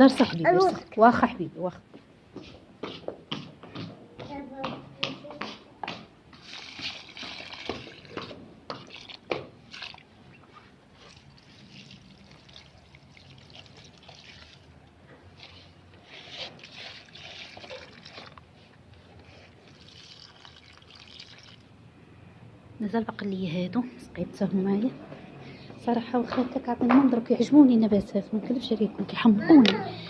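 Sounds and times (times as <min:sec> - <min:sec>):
water splashing on plants: 0:06.4 - 0:10.1, 0:11.0 - 0:14.8, 0:16.6 - 0:18.4, 0:19.7 - 0:21.6.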